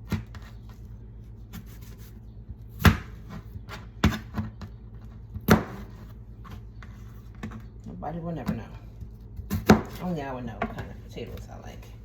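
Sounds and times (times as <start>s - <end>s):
knife chopping on cutting board: 2.7s - 4.5s, 5.4s - 6.1s, 9.4s - 10.0s.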